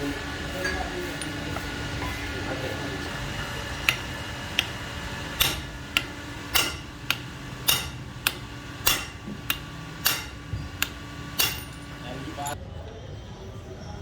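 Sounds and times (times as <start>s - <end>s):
hammer striking metal: 3.2s - 12.6s.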